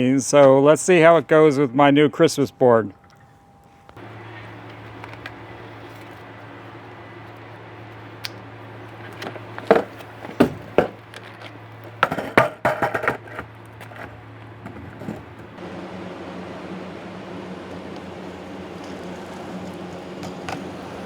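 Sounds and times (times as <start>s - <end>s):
skateboard wheels rolling: 3.9s - 21.0s
skateboard clacking on pavement: 4.0s - 6.2s, 8.2s - 15.5s, 17.6s - 21.0s.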